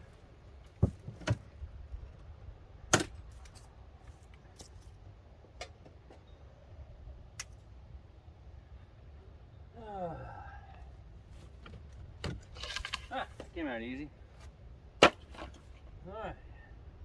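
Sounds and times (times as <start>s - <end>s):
wooden boards cracking: 15.0s - 15.7s.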